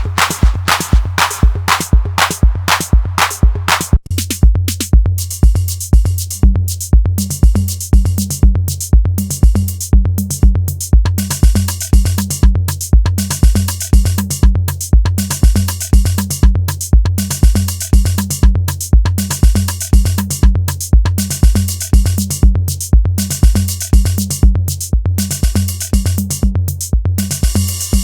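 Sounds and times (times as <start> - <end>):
clap-like hits: 0.0 - 4.0
booming kick drum: 0.0 - 28.0
ticking hi-hats: 0.0 - 28.0.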